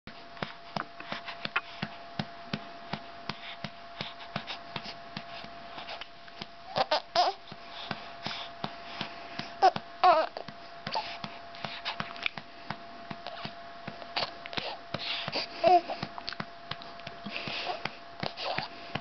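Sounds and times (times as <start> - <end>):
baby vocal sounds: 6.7 - 7.4, 9.6 - 11.2, 18.2 - 18.7.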